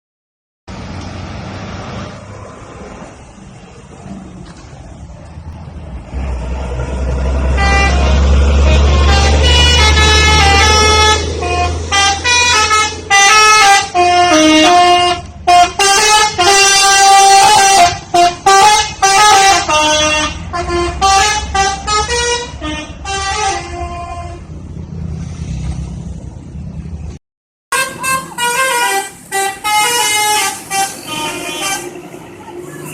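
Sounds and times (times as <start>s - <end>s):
bus engine rumble: 0.7s - 32.9s
multi-tone air horn tune: 7.5s - 24.5s, 27.7s - 32.2s.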